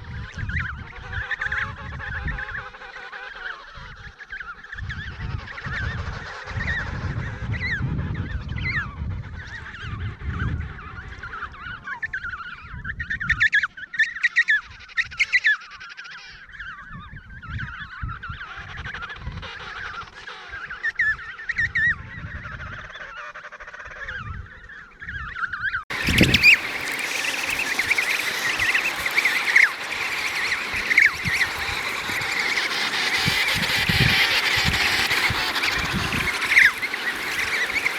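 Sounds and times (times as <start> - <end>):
penguins honking: 25.9 - 37.9.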